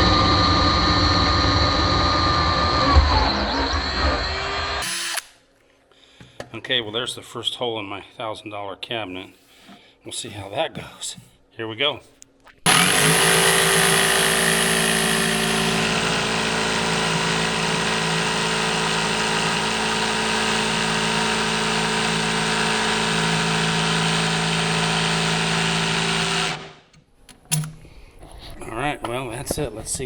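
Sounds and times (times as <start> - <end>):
electric jigsaw cutting wood: 0.0 - 5.3, 12.7 - 26.9.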